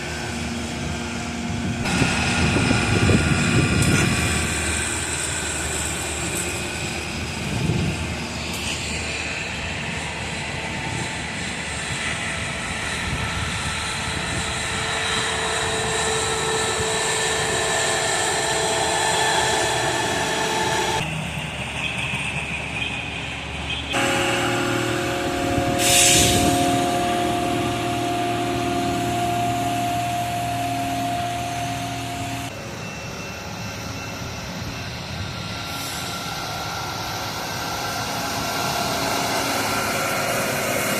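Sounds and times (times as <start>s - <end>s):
rail machines droning: 0.0s - 40.9s
hissing burst: 24.0s - 32.4s.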